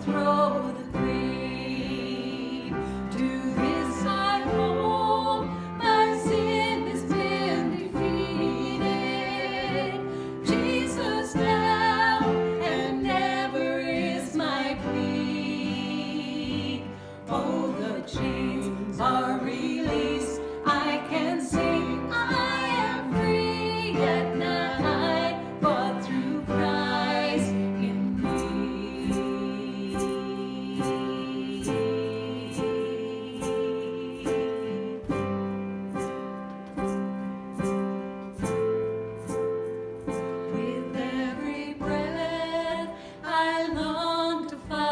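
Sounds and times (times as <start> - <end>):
voices singing worship song: 0.0 - 36.9, 40.0 - 44.9
instrumental accompaniment: 0.0 - 44.9.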